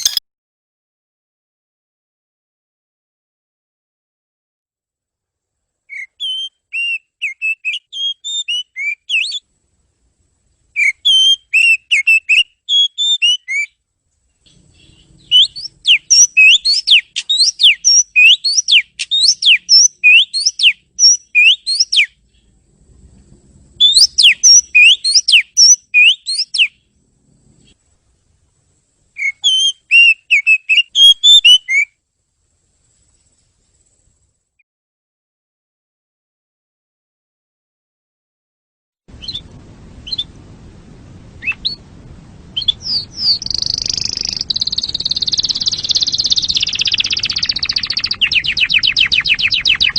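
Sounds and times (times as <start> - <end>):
bird singing whistled notes: 0.0 - 0.2, 5.9 - 9.5, 10.7 - 13.8, 14.5 - 22.5, 23.8 - 26.9, 29.1 - 32.0, 39.2 - 40.3, 41.4 - 41.8, 42.6 - 49.9.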